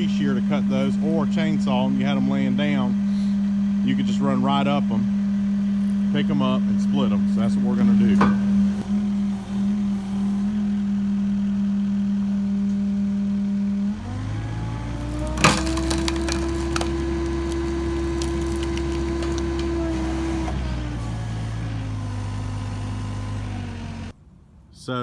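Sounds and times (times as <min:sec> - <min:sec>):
engine running: 0:00.0 - 0:24.2
log splitting with loud crack: 0:14.2 - 0:20.6
wood splintering cracks: 0:14.2 - 0:20.6.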